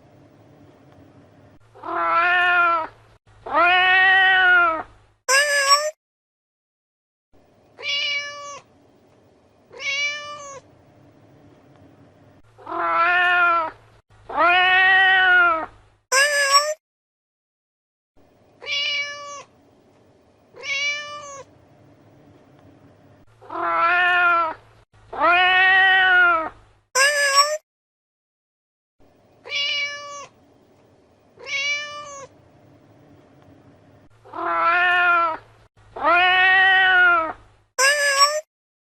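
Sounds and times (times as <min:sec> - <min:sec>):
cat meowing: 0:01.8 - 0:02.9, 0:03.5 - 0:06.0, 0:07.8 - 0:08.7, 0:09.7 - 0:10.6, 0:12.6 - 0:16.8, 0:18.6 - 0:19.5, 0:20.6 - 0:21.5, 0:23.4 - 0:27.6, 0:29.4 - 0:30.4, 0:31.4 - 0:32.3, 0:34.3 - 0:35.4, 0:36.0 - 0:38.4.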